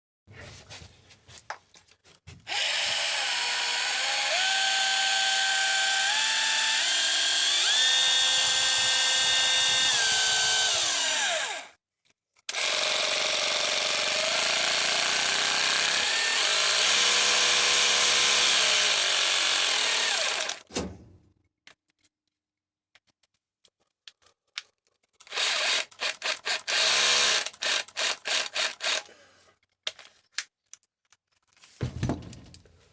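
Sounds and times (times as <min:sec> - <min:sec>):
electric percussion drill whining: 0:02.5 - 0:11.7, 0:12.5 - 0:20.7, 0:25.2 - 0:29.1.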